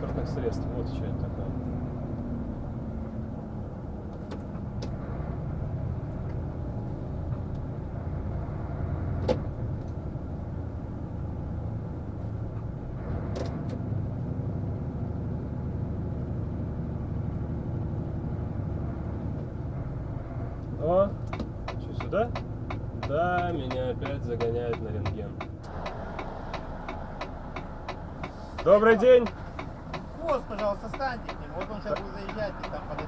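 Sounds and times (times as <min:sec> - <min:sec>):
truck diesel engine running: 0:19.6 - 0:33.0.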